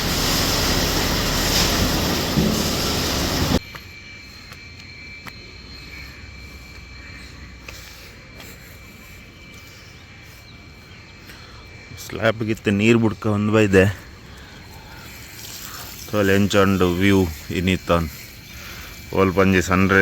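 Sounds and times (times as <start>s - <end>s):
loud rushing noise: 0.0s - 3.6s
high-pitched insect trill: 0.0s - 20.0s.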